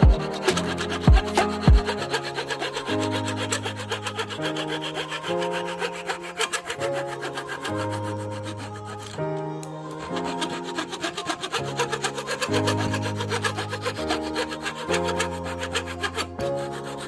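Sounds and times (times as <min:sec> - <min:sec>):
fast ticking beat: 0:00.0 - 0:02.0.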